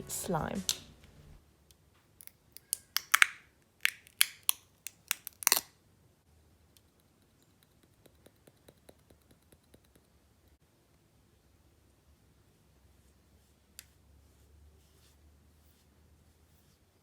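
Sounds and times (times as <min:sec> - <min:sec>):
slime popping and clicking: 0:02.6 - 0:05.7.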